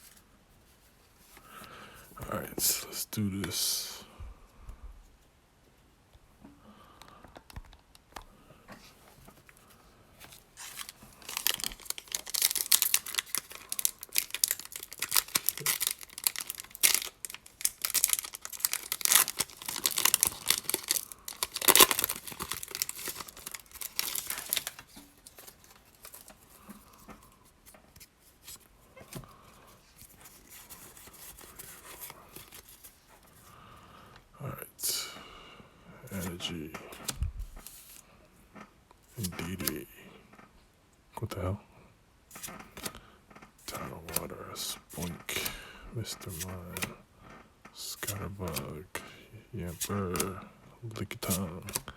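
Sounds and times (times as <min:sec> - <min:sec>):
rustling of handling: 0:07.3 - 0:33.6
foil wrapper crackling: 0:10.6 - 0:26.4.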